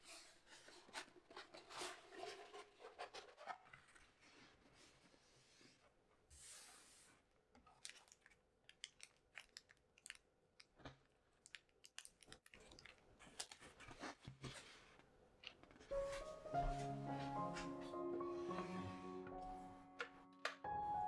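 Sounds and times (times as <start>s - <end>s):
small clicks and crinkles: 7.5s - 16.0s.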